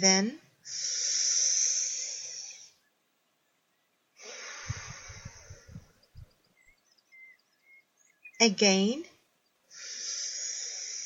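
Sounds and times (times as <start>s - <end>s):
air puffs popping on microphone: 4.2s - 6.3s
deep breath into microphone: 4.2s - 6.3s, 9.7s - 11.0s.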